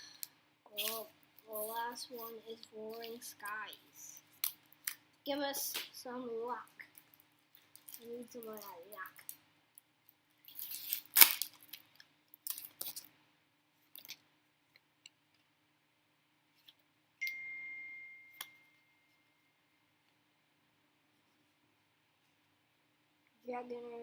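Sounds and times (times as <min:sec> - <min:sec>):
foil pack tearing and crinkling: 0:10.4 - 0:11.8
high ringing tone: 0:17.2 - 0:19.4.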